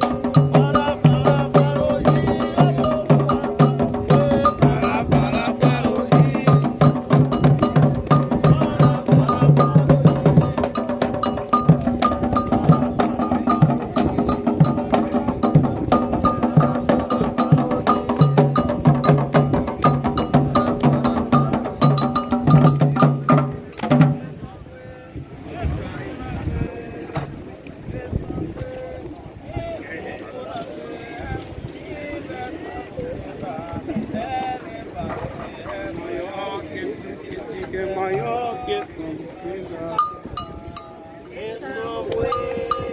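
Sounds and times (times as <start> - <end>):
hand drums playing: 0.0 - 24.4, 40.0 - 41.3, 42.2 - 42.9
iron bell striking pattern: 40.0 - 40.9.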